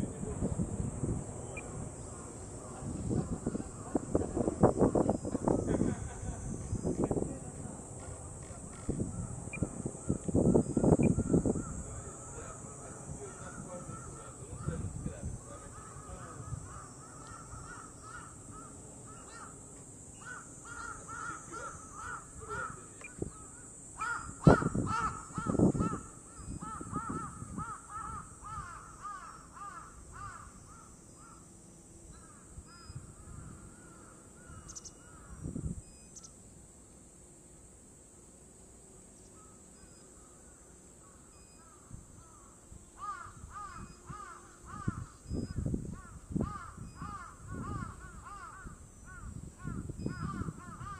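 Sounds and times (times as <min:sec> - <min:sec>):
wind buffeting microphone: 0:00.0 - 0:19.4, 0:20.2 - 0:29.3, 0:32.2 - 0:35.9, 0:41.8 - 0:50.9
steady high hiss: 0:00.0 - 0:50.9
crows cawing: 0:10.0 - 0:19.6, 0:20.2 - 0:31.5, 0:32.2 - 0:35.6, 0:40.2 - 0:50.9.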